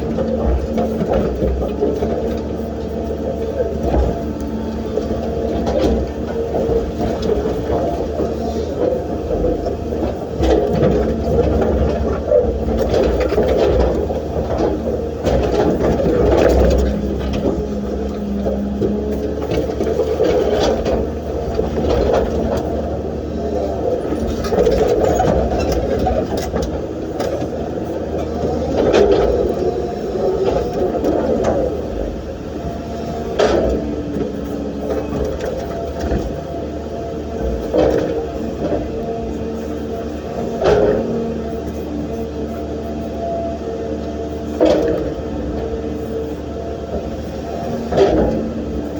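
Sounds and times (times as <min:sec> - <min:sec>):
excavator diesel engine: 0:00.0 - 0:48.9.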